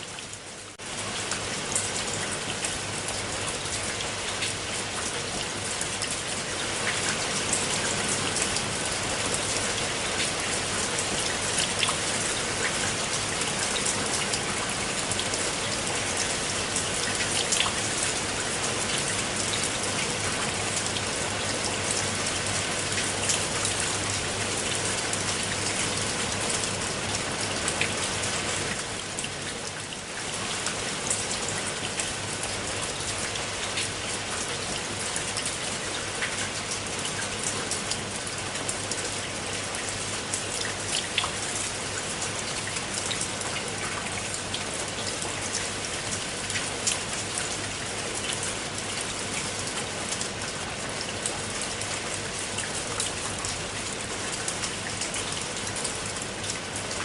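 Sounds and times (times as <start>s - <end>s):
rain falling onto water: 0.0s - 57.0s.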